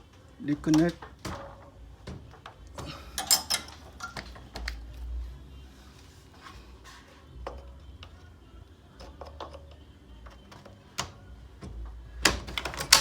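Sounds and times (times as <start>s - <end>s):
metallic clicks and knocks: 0.6s - 4.7s, 9.0s - 13.0s
clacks of door opener release: 12.2s - 13.0s.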